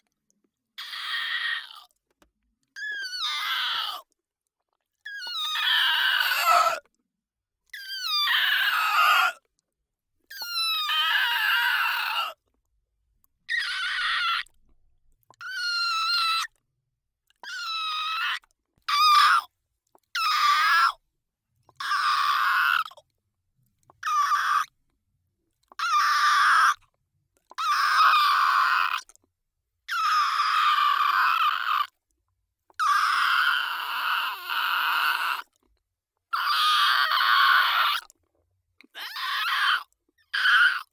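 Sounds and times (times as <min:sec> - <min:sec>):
high-pitched monster cries: 0:05.6 - 0:06.8, 0:08.3 - 0:09.4.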